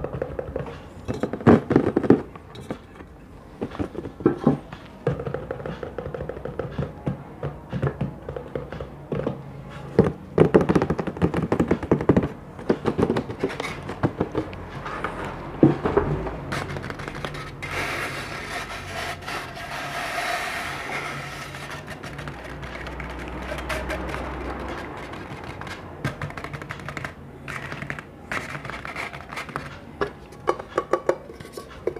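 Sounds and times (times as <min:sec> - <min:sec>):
rapid taps on hard objects: 0:03.6 - 0:09.4, 0:10.0 - 0:17.7, 0:20.5 - 0:31.9
dense scratching: 0:16.2 - 0:29.9.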